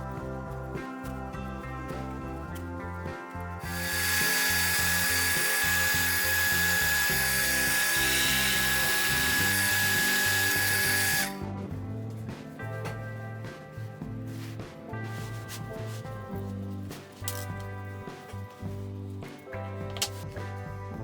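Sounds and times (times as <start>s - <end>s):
background music: 0.0s - 21.0s
power tool whining: 3.6s - 11.4s.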